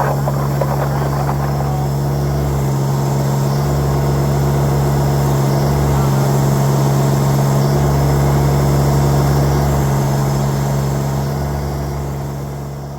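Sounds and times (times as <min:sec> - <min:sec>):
tractor diesel engine humming: 0:00.0 - 0:09.0.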